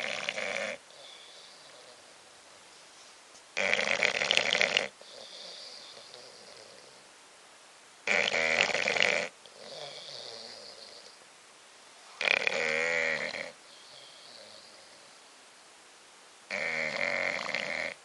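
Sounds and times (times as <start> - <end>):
dog snoring: 0.0 - 2.1, 3.6 - 7.0, 8.0 - 11.2, 12.2 - 15.2, 16.5 - 18.0.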